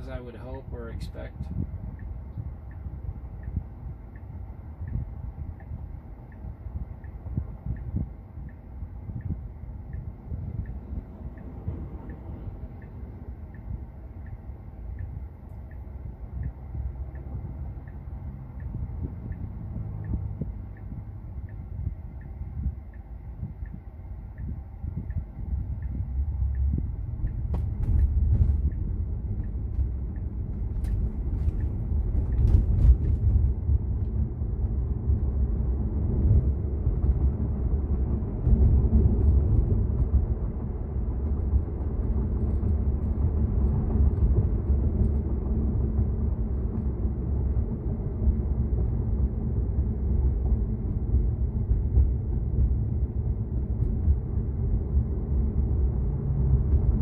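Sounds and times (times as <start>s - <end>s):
road and tyre rumble: 0.0s - 57.0s
faint ticks: 12.8s - 21.6s.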